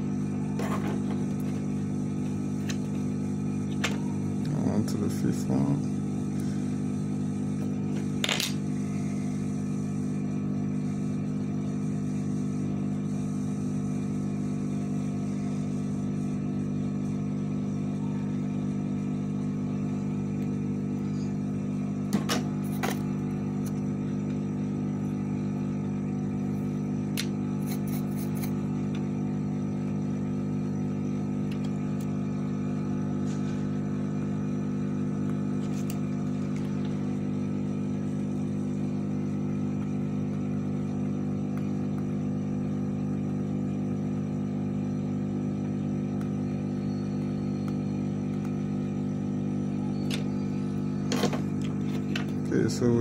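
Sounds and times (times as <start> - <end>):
electrical hum: 0.0 - 53.0.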